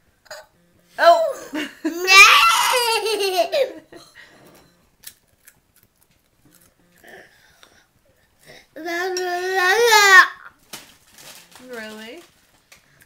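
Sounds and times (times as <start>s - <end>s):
small child laughing: 1.5s - 3.9s.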